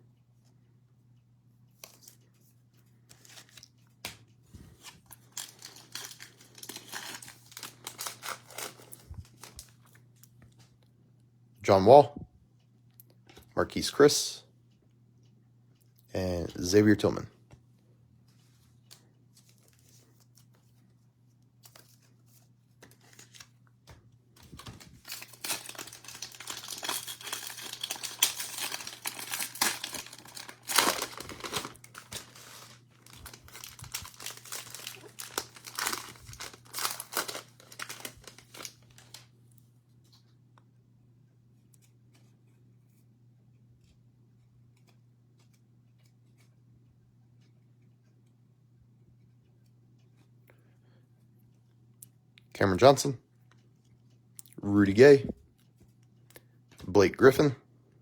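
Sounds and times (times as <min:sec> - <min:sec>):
cellophane wrapper crinkling: 0:04.6 - 0:10.0, 0:24.4 - 0:39.3.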